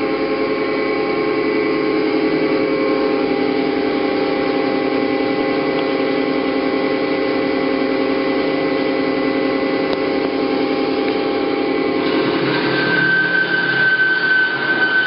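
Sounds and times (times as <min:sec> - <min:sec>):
bandsaw running: 0:10.4 - 0:15.0.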